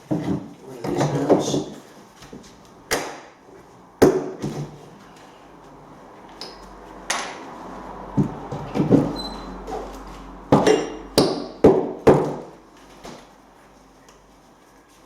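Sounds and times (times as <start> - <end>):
hammer knocking on nails: 10.5 - 12.5.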